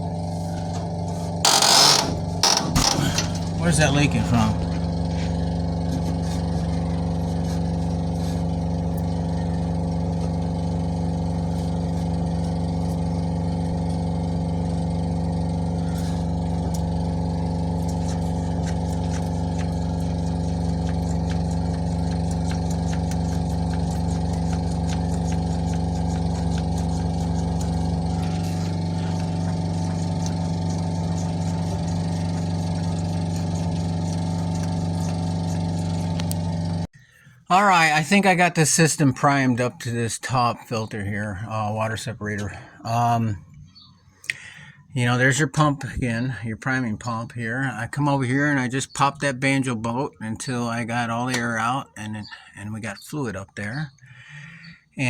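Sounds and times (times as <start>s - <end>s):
motor humming: 0.0s - 36.9s.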